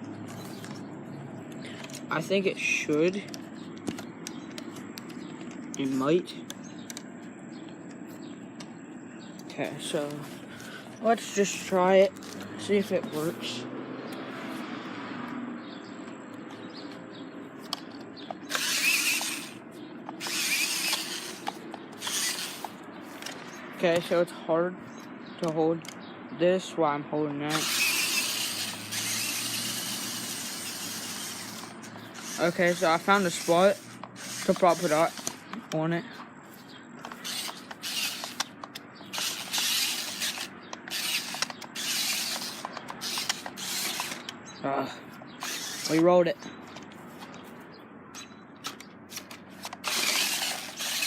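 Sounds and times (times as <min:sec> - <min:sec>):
rc car motor whining: 0:18.4 - 0:23.3, 0:27.5 - 0:35.5, 0:36.6 - 0:44.3, 0:45.3 - 0:46.1, 0:48.7 - 0:51.0
tyres rushing over ground: 0:48.7 - 0:51.0.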